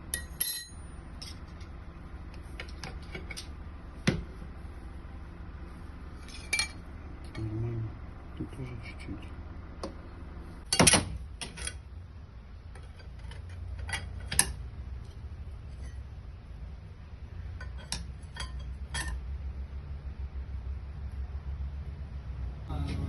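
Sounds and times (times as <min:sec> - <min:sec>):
metal tools clinking: 0:00.0 - 0:01.7, 0:06.2 - 0:07.4, 0:17.6 - 0:19.2
steady low hum: 0:00.0 - 0:23.0.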